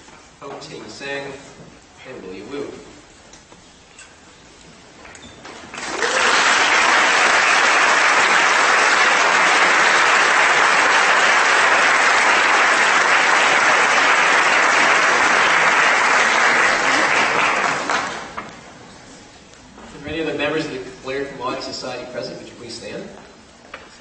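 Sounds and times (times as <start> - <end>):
audience applauding: 5.6 - 18.6.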